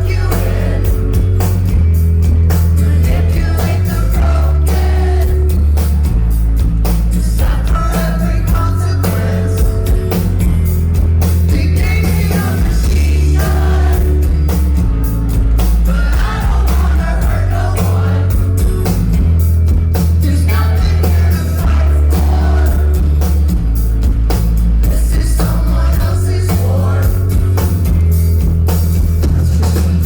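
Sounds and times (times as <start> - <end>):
sung lead vocal: 0.0 - 6.1, 6.8 - 10.6, 11.3 - 14.9, 15.6 - 19.4, 20.0 - 23.5, 24.8 - 27.9
live rock band playing: 0.0 - 30.0.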